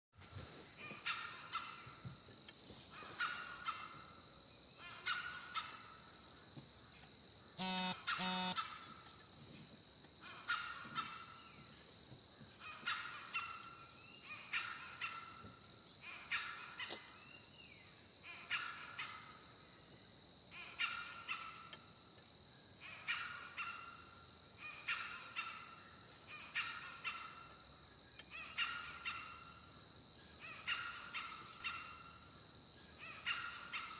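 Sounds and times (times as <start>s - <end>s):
low loud bird calls: 7.6s - 9.2s.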